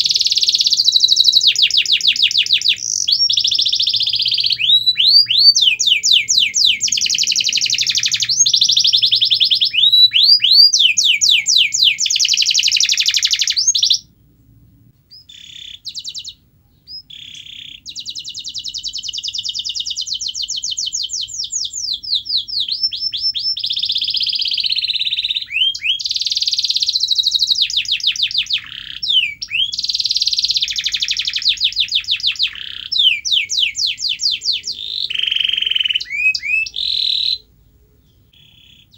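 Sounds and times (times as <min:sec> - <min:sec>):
canary singing trills: 0:00.0 - 0:14.2, 0:15.1 - 0:38.9.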